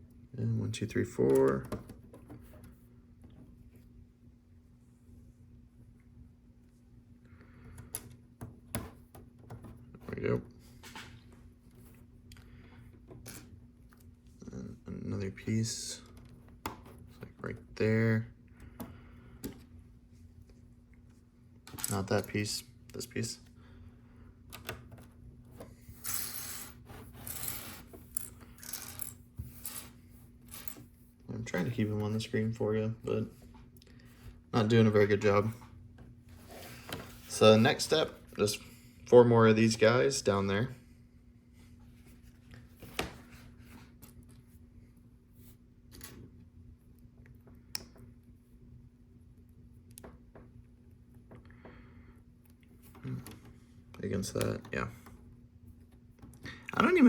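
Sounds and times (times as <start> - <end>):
steady low hum: 0.0 - 57.0.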